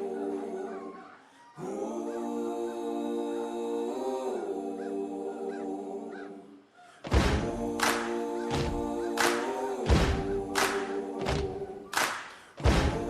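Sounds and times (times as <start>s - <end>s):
loud drum hits: 7.1s - 7.6s, 9.9s - 10.5s, 12.6s - 13.0s.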